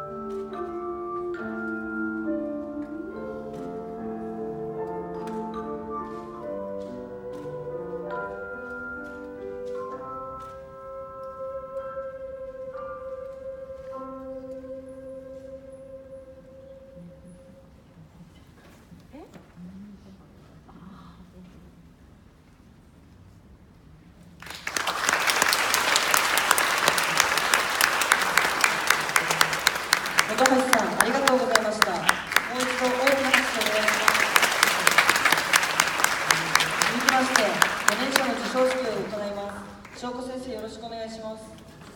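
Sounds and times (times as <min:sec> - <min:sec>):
audience applause: 0:24.4 - 0:40.0.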